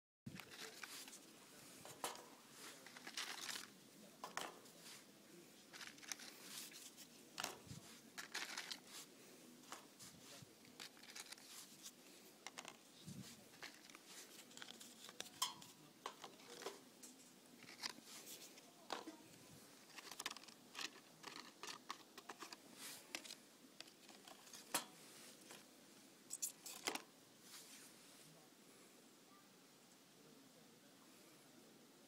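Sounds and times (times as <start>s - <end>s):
milk cartons crinkling: 0.3s - 5.0s, 5.7s - 16.9s, 17.5s - 19.1s, 19.8s - 24.8s.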